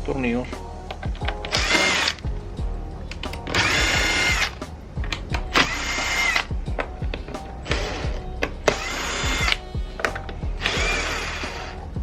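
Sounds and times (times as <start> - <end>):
background music: 0.0 - 12.0
power screwdriver whirring: 1.5 - 2.2, 3.5 - 4.6, 5.5 - 6.5, 7.6 - 9.6, 10.6 - 11.8.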